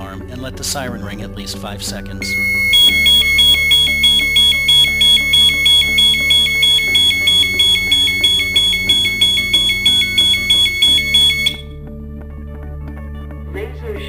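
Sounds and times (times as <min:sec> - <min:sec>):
two-tone alarm siren beeping: 0:02.2 - 0:11.7.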